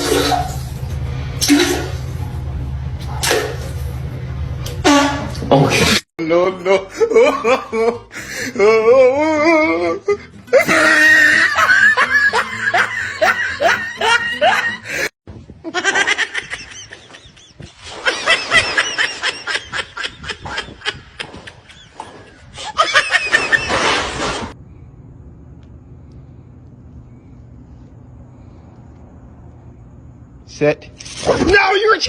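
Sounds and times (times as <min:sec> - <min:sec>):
people laughing hard: 0:06.6 - 0:24.2.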